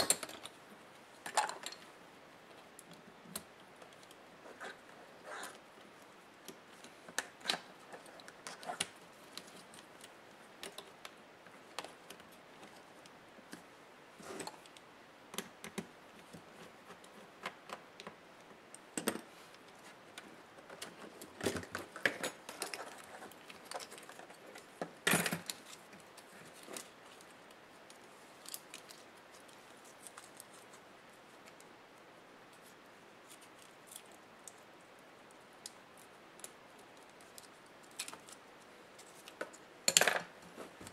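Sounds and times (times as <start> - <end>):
laptop parts and tools clicking: 14.3 - 31.7.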